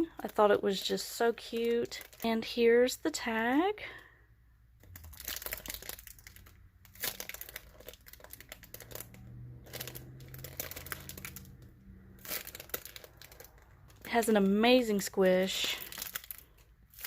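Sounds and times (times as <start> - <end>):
squishy toy crinkling and rustling: 0.0 - 3.5, 4.8 - 17.0.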